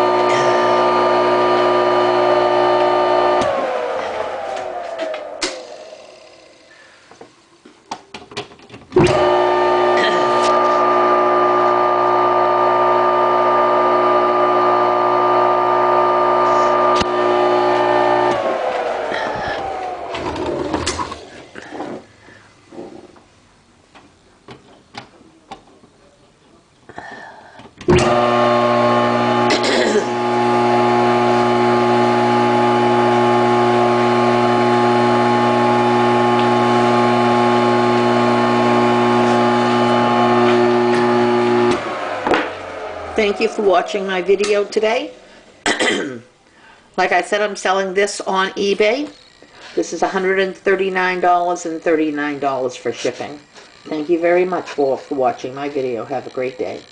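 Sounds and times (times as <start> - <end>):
table saw motor humming: 0.0 - 7.4, 8.9 - 22.0, 27.8 - 45.9, 47.0 - 56.9.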